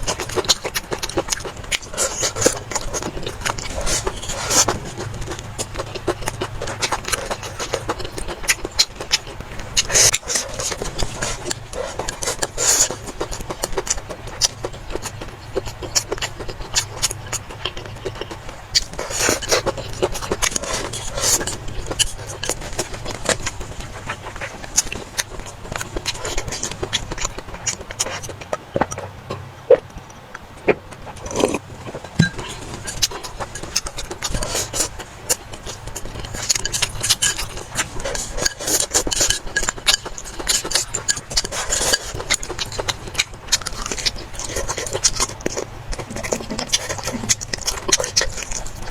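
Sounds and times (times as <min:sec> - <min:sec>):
chewing and slurping: 0:00.0 - 0:48.9
steady low hum: 0:00.0 - 0:48.9
utensils scraping a bowl: 0:31.1 - 0:48.9.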